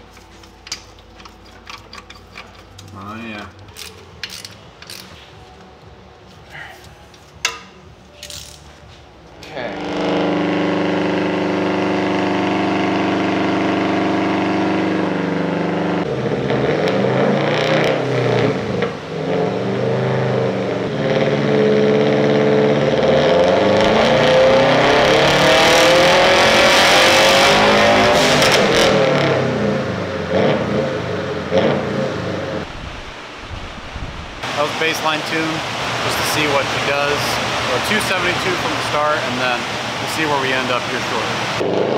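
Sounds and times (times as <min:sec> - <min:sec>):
car engine at full throttle: 0:09.5 - 0:40.0, 0:40.8 - 0:41.9.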